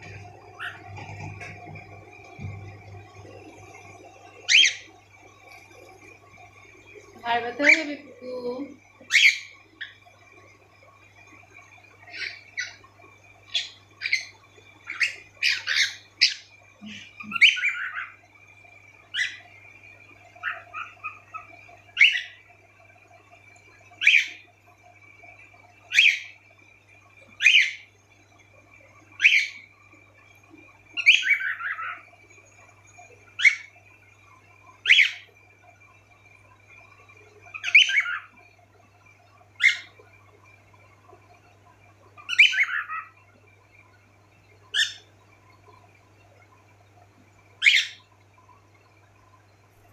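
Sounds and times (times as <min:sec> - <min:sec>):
cockatiels chirping: 0:04.5 - 0:04.8, 0:09.1 - 0:09.5, 0:14.9 - 0:18.2, 0:20.4 - 0:22.4, 0:24.0 - 0:24.4, 0:31.0 - 0:32.0, 0:34.9 - 0:35.2, 0:37.5 - 0:38.3, 0:39.6 - 0:39.9, 0:42.3 - 0:43.1, 0:47.6 - 0:48.0.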